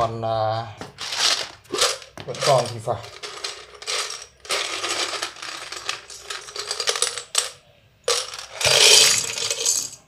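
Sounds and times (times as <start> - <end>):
plastic keycaps clattering: 1.0 - 7.4.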